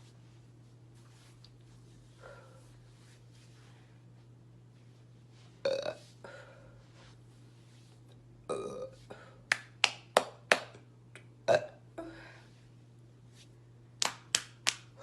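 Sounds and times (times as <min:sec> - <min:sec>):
person burping: 0:05.7 - 0:06.0, 0:08.5 - 0:09.0, 0:11.4 - 0:12.1
sharp hand smacks: 0:14.0 - 0:14.9.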